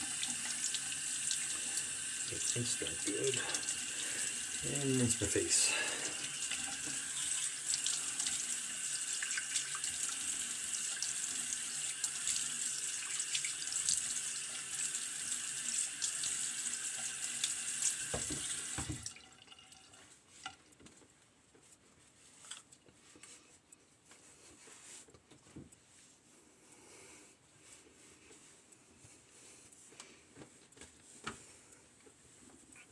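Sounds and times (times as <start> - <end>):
sink tap running: 0.0 - 19.2.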